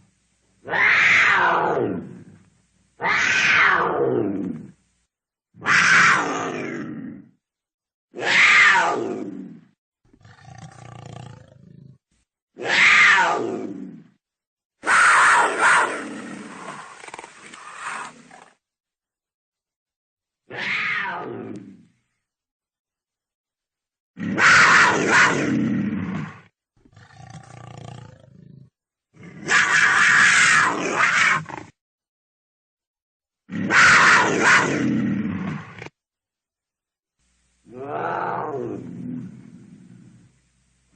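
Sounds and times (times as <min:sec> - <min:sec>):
cougar calling: 0:14.8 - 0:18.5.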